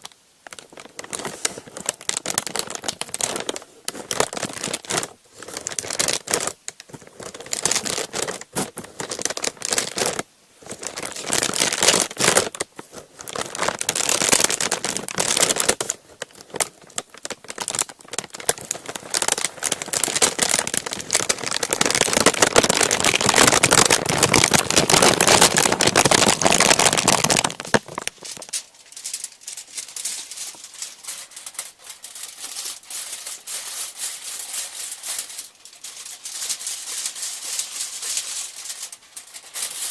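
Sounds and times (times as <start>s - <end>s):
crinkly sheet crumpling: 0.0s - 39.9s.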